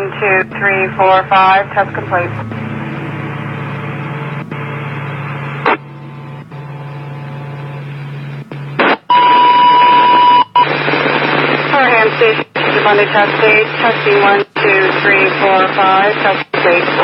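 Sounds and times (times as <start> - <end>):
low hum: 0.0 - 17.0
radio hiss: 8.5 - 17.0.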